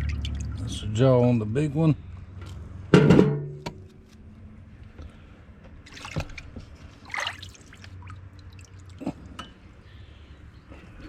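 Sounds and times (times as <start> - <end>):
liquid dripping and splashing: 0.0 - 0.8, 5.9 - 9.1.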